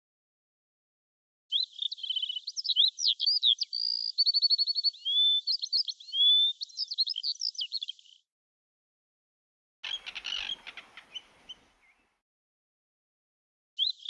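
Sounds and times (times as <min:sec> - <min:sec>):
bird singing chirps and trills: 0:01.5 - 0:08.2, 0:09.8 - 0:12.1.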